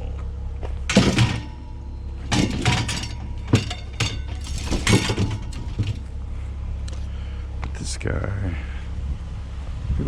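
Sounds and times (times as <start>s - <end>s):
steady low hum: 0.0s - 10.0s
objects clattering and knocking: 0.6s - 6.2s.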